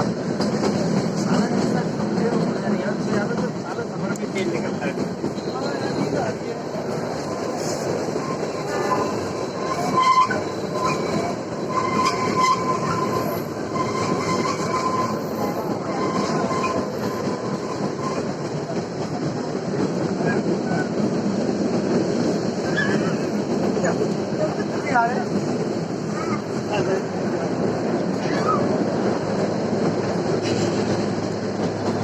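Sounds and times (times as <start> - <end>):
train wheels rumbling on rail: 0.0 - 32.0
high wheel squeal: 7.3 - 18.4, 22.6 - 23.4.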